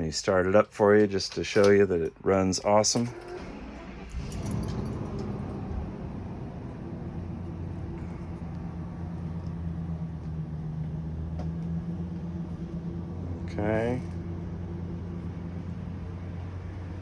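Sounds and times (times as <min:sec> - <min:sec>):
engine starting and idling: 0:01.2 - 0:10.8.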